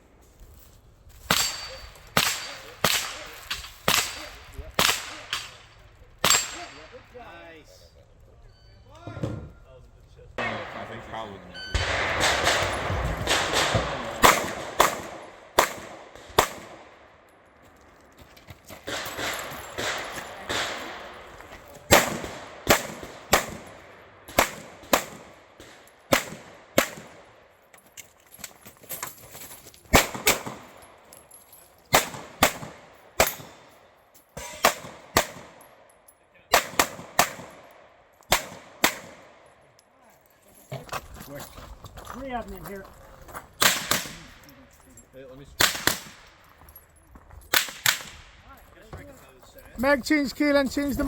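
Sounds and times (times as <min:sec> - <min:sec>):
gunshots with echo: 0:01.3 - 0:07.0, 0:10.4 - 0:17.1, 0:18.8 - 0:27.5, 0:29.9 - 0:31.0, 0:31.9 - 0:33.8, 0:34.4 - 0:35.8, 0:36.5 - 0:39.5, 0:43.6 - 0:44.4, 0:45.6 - 0:46.4.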